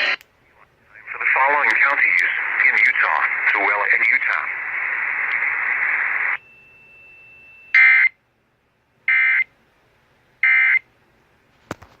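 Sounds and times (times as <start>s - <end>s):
faint steady high tone: 6.4s - 7.8s.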